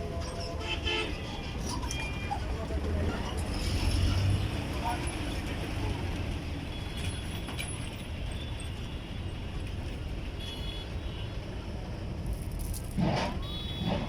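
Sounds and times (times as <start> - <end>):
highway traffic rumble: 0.0 - 14.0.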